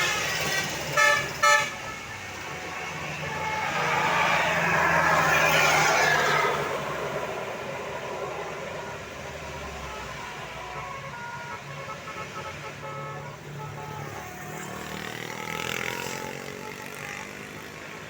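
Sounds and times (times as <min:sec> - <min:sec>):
road noise: 0:00.0 - 0:18.0
vehicle engines running: 0:00.0 - 0:18.0
vehicle passing close: 0:02.4 - 0:09.6.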